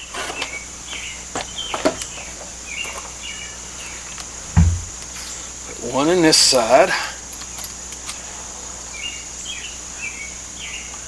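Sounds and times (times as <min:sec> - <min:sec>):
insect drone: 0:00.0 - 0:11.0
dull thump: 0:04.5 - 0:05.1.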